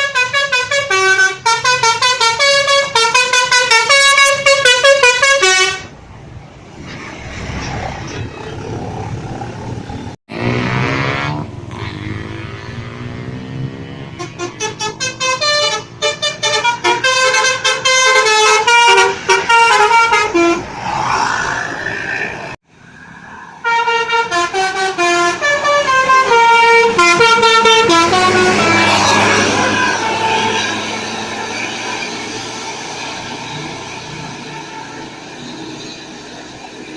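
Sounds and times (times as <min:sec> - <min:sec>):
multi-tone bus horn melodies: 0:00.0 - 0:05.9, 0:13.7 - 0:20.7, 0:23.6 - 0:32.0.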